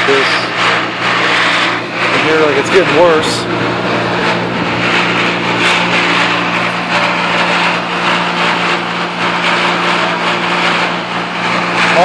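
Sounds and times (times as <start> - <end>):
harsh grinding noise: 0.0 - 12.0
heat pump humming: 0.0 - 12.0.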